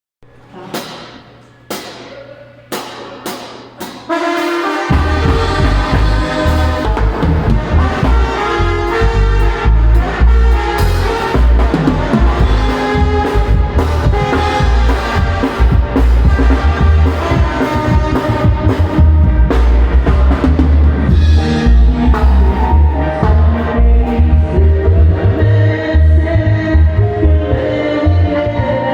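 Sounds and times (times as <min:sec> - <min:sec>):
drum hits: 0:00.8 - 0:23.7
brass band playing: 0:03.4 - 0:28.9.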